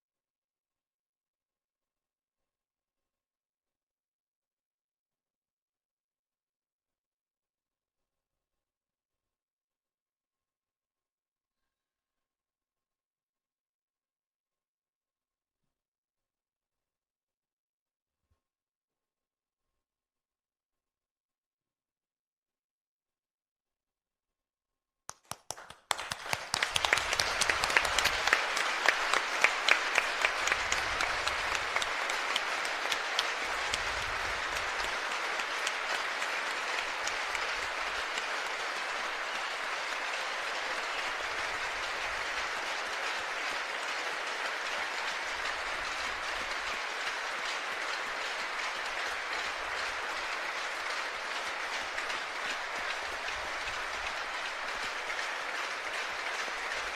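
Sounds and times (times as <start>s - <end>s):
crowd applauding: 25.1s - 56.9s.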